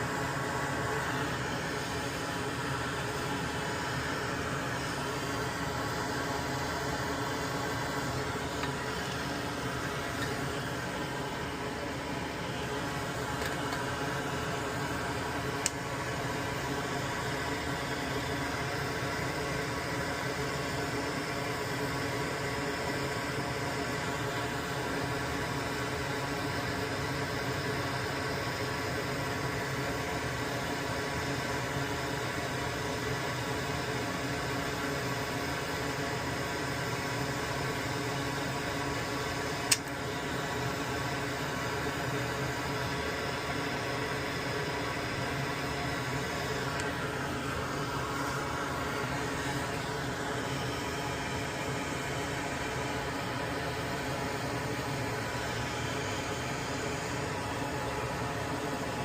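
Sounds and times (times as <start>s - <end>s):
hot-air station hiss and fan hum: 0.0s - 59.0s
sharp click: 39.7s - 40.0s.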